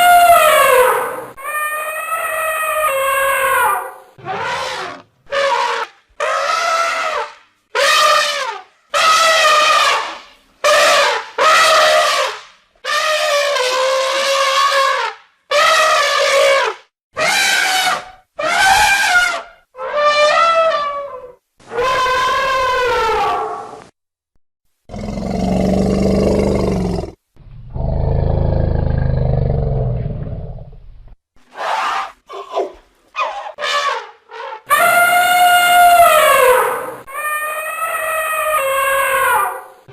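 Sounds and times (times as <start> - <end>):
elephant trumpeting: 0.0 - 23.6, 33.2 - 39.8
elephant roaring: 24.9 - 30.5.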